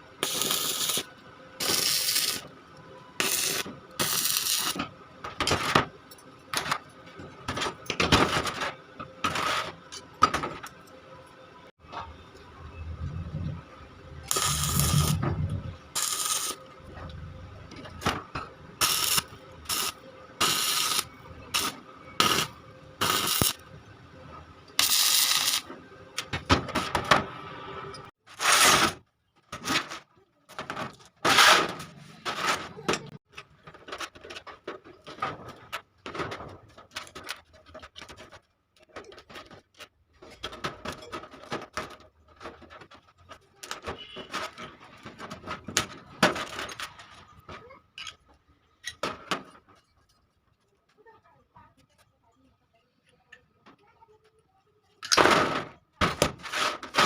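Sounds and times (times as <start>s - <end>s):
metal scraping and clinking: 11.9s - 23.8s.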